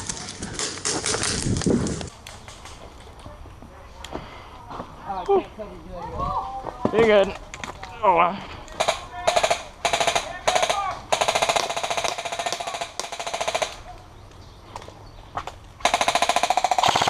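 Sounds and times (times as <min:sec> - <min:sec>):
airsoft guns firing: 0:08.8 - 0:13.9, 0:15.8 - 0:17.0.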